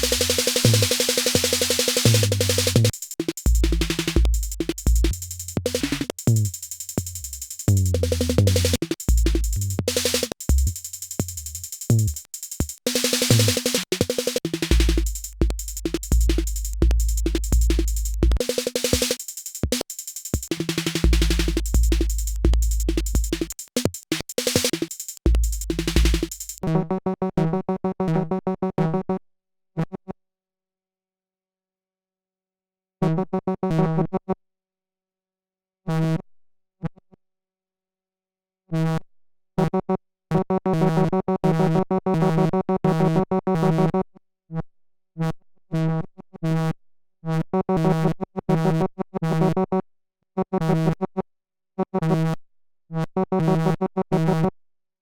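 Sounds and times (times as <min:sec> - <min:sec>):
synthesized kick and bass: 0:00.0 - 0:26.6.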